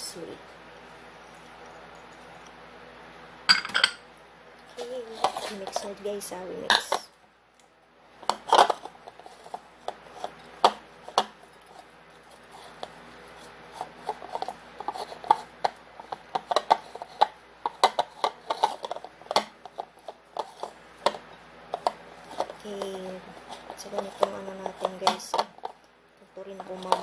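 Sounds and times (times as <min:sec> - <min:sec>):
spoon clinking against bowl: 0:03.5 - 0:04.0
spoon stirring in bowl: 0:05.1 - 0:06.0, 0:08.2 - 0:25.9, 0:26.5 - 0:27.0.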